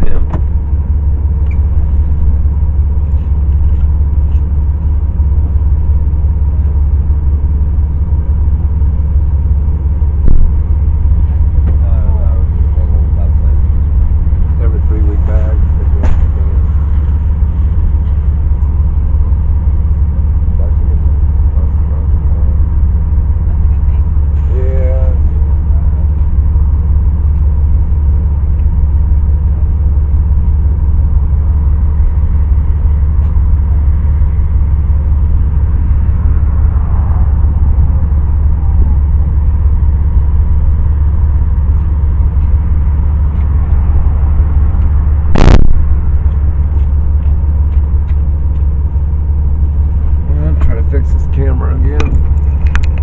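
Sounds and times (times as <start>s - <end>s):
loud sharp thump: 0.0s - 0.6s, 15.8s - 16.6s, 45.3s - 46.0s
car road and engine rumble: 0.0s - 53.0s.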